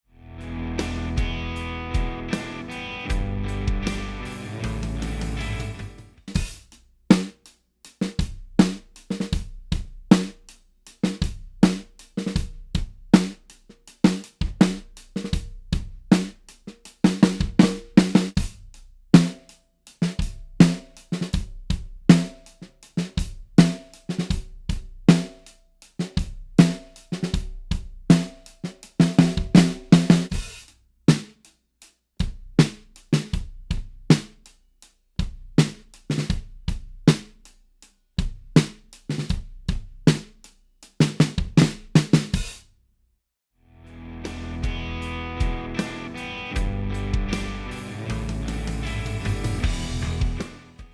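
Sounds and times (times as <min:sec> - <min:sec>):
bass drum: 0:00.4 - 0:06.8, 0:17.1 - 0:19.5, 0:29.0 - 0:30.6, 0:41.1 - 0:42.5, 0:44.3 - 0:50.9.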